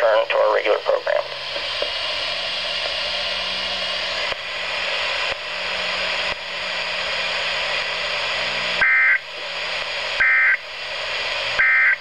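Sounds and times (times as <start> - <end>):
low hum: 0.0 - 12.0
radio static hiss: 0.0 - 12.0.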